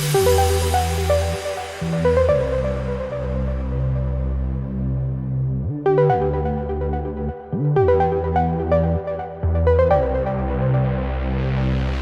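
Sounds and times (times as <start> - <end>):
electronic music with synth chords: 0.0 - 12.0
pitch-sliding bass drop: 0.0 - 12.0.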